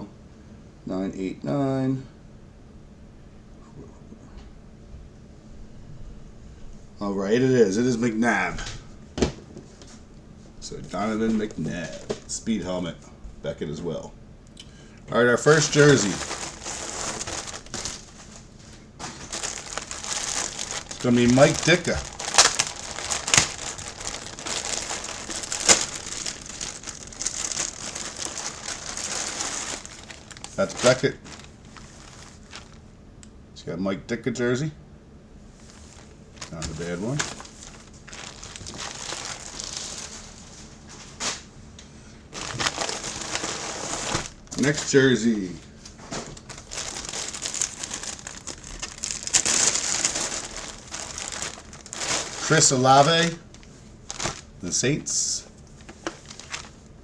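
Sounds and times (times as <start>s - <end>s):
wrapping crinkling and rustling: 10.6s - 12.6s, 15.1s - 32.9s, 35.5s - 41.5s, 42.2s - 57.0s.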